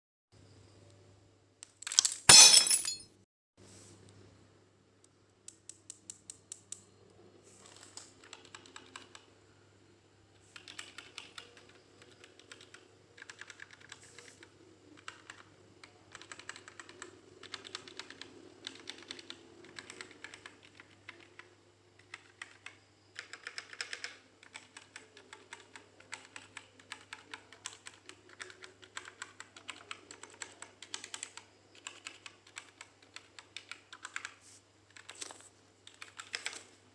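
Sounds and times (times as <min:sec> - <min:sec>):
mechanical keyboard typing: 0:07.7 - 0:09.3, 0:10.5 - 0:36.7.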